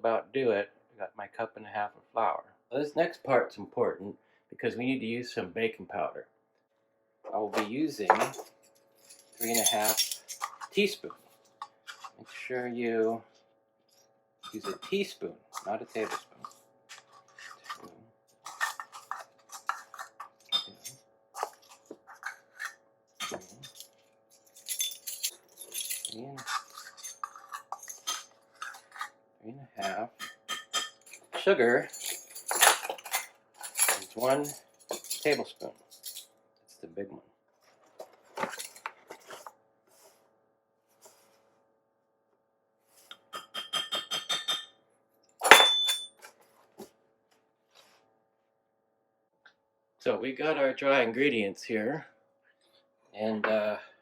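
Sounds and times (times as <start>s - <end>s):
teaspoon clinking and scraping: 8.0s - 10.9s, 11.6s - 12.4s, 14.4s - 29.2s, 29.8s - 36.2s, 45.4s - 46.3s.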